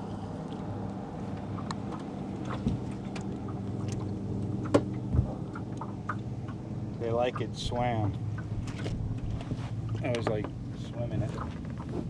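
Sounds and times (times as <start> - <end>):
boat motor humming: 0.0 - 12.0.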